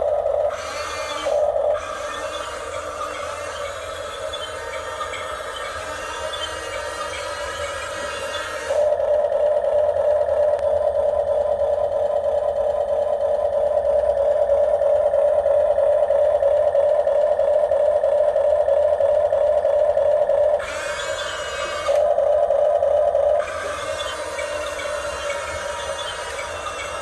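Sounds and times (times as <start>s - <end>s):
toy excavator motor whining: 0.0s - 10.7s, 19.5s - 27.0s.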